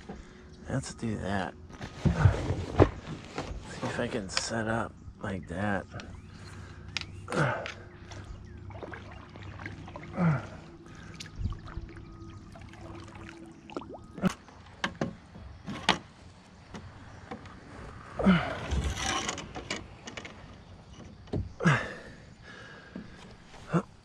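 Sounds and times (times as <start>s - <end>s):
paddle swishing through water: 7.4s - 14.7s.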